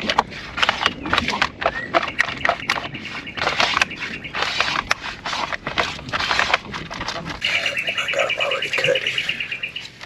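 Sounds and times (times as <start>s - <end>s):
rough scraping on boat hull: 0.0s - 7.4s
bird trilling: 1.6s - 4.9s, 7.4s - 10.0s.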